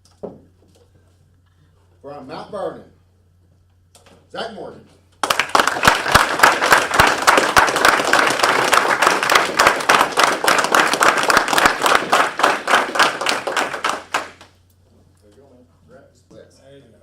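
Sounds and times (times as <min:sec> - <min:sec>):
audience clapping: 0:05.2 - 0:14.6.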